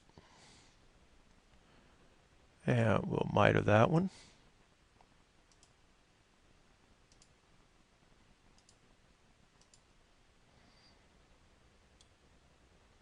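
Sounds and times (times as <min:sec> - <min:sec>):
computer mouse clicks: 0:05.0 - 0:05.8, 0:07.1 - 0:07.4, 0:08.6 - 0:08.8, 0:09.6 - 0:09.9, 0:12.0 - 0:12.2.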